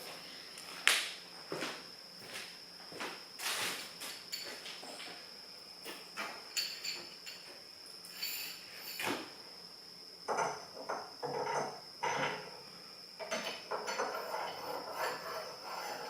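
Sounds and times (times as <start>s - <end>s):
small metal hardware clinking: 6.5s - 7.5s.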